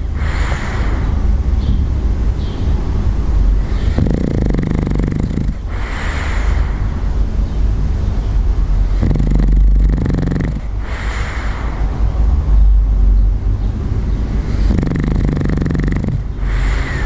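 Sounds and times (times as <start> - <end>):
breathy out-breath: 0.0 - 2.9, 3.5 - 8.2, 8.8 - 12.8, 14.3 - 17.0
steady low hum: 0.0 - 17.0
dog snoring: 3.6 - 7.2, 8.8 - 11.9, 14.4 - 17.0.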